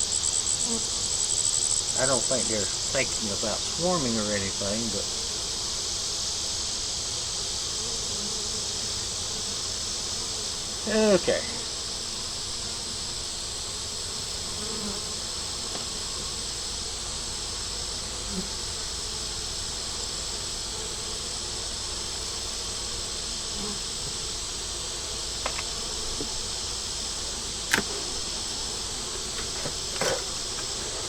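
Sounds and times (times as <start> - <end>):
honey bees buzzing: 0.0 - 31.0
sharp click: 25.4 - 25.7, 27.7 - 28.0.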